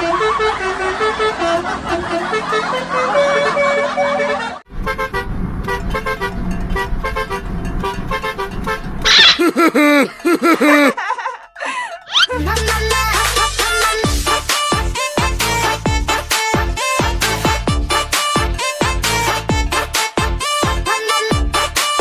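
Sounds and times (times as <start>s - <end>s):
multi-tone bus horn toots: 0.0s - 9.4s, 13.0s - 22.0s
music: 4.8s - 8.9s, 12.3s - 22.0s.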